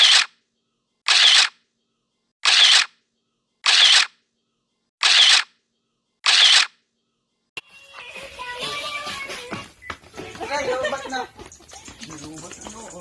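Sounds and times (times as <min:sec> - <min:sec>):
camera shutter clicks: 0:01.1 - 0:01.6, 0:02.4 - 0:02.9, 0:03.6 - 0:04.1, 0:05.0 - 0:05.5, 0:06.2 - 0:06.8
music with singing: 0:07.6 - 0:10.5.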